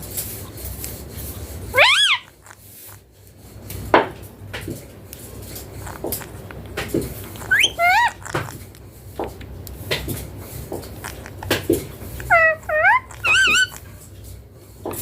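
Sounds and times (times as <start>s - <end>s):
parakeet squawking: 1.7s - 3.0s, 5.8s - 6.5s, 7.2s - 8.7s, 10.9s - 14.0s.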